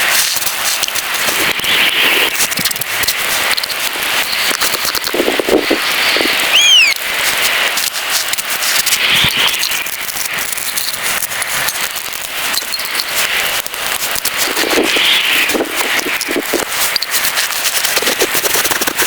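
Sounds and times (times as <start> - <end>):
rain pattering on a tent: 0.0 - 19.0
high falling chirp: 6.5 - 7.0.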